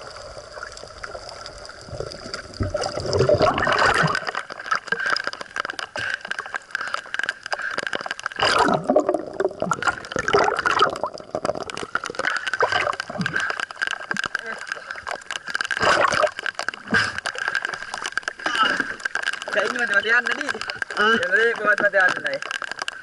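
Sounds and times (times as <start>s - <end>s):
water gurgling and bubbling: 0.0s - 6.6s, 8.3s - 19.6s
crackle of small clicks: 0.0s - 23.0s.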